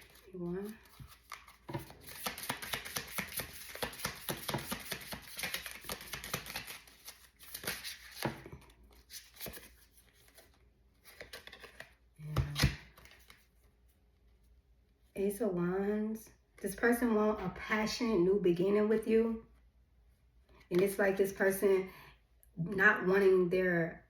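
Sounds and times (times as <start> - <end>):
cards being shuffled: 0.0 - 13.6.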